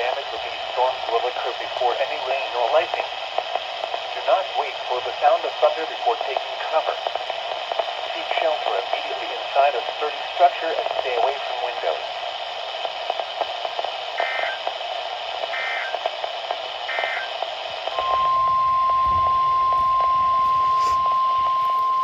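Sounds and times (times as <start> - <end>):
radio static hiss: 0.0 - 22.0
steady warning alarm tone: 14.0 - 14.7, 15.5 - 22.0
buzzing digital data tones: 14.2 - 14.6.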